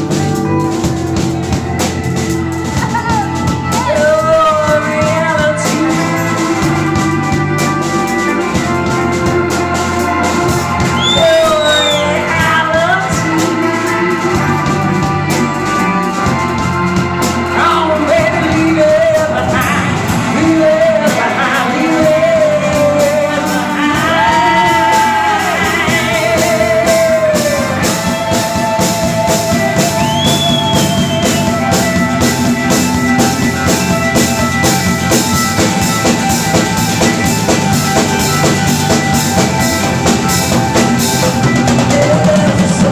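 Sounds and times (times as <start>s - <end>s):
rock band playing: 0.0s - 42.9s
woman singing vocal runs: 2.8s - 7.7s, 10.9s - 16.1s, 17.4s - 31.8s, 41.4s - 42.9s.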